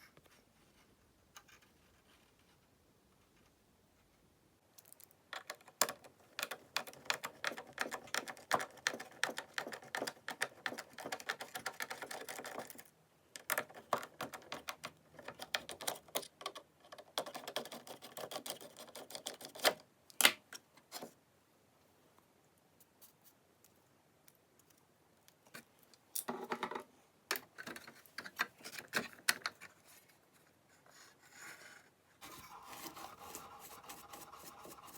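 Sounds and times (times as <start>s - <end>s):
plastic parts clicking and clattering: 4.8s - 21.1s, 25.5s - 29.8s.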